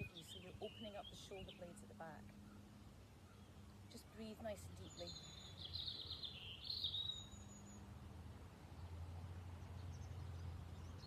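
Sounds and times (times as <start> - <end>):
songbird warbling: 0.0 - 7.9.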